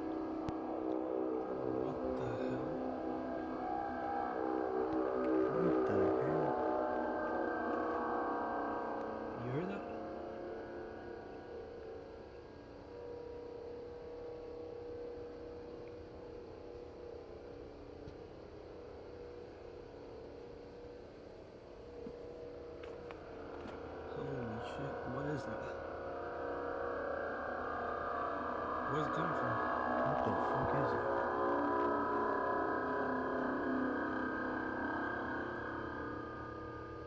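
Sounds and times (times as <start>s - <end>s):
lower tone dipping and rising: 0.0s - 12.5s, 22.4s - 37.0s
droning horn-like tone: 0.0s - 37.0s.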